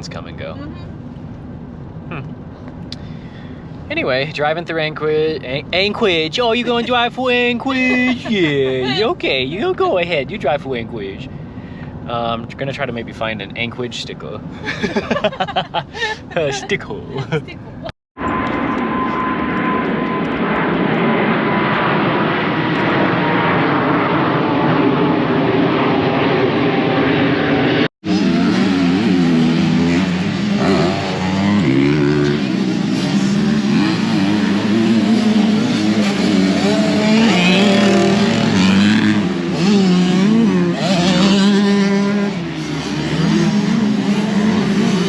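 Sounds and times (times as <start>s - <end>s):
faint engine whine: 0.0s - 45.0s
road noise: 0.0s - 45.0s
van engine running: 5.5s - 10.2s, 14.3s - 17.9s
aircraft engine rush: 18.2s - 41.4s.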